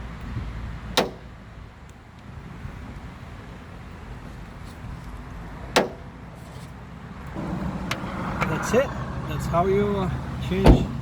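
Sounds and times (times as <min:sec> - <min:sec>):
steady low rumble: 0:07.3 - 0:11.0.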